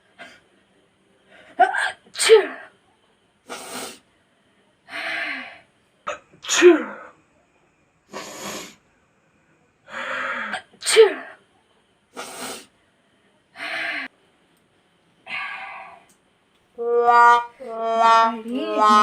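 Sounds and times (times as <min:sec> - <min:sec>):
woman sneezing: 0:01.6 - 0:02.7, 0:10.8 - 0:11.4
breathy sniffs: 0:03.5 - 0:04.1, 0:08.1 - 0:08.8, 0:12.1 - 0:12.8.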